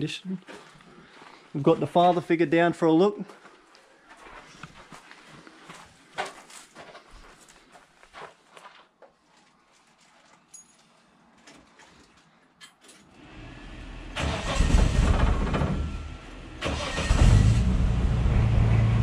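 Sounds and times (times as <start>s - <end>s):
car engine starting and running: 13.2s - 19.0s.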